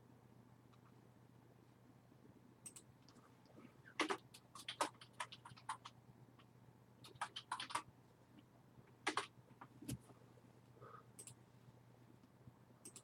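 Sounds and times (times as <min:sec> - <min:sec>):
keyboard typing clicks: 0:02.6 - 0:03.2, 0:04.0 - 0:05.9, 0:07.0 - 0:07.9, 0:09.0 - 0:09.3, 0:11.2 - 0:11.4.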